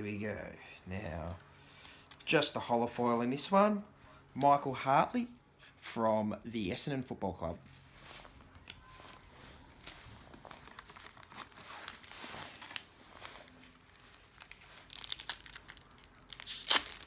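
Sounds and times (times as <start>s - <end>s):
foil wrapper crinkling and tearing: 8.6s - 17.0s.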